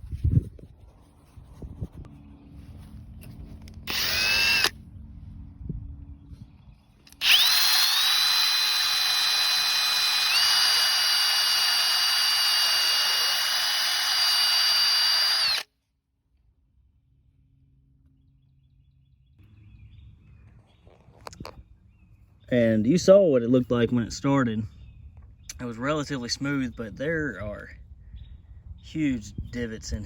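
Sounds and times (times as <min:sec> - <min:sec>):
power tool whining and grinding: 0:03.6 - 0:04.8, 0:07.0 - 0:15.7.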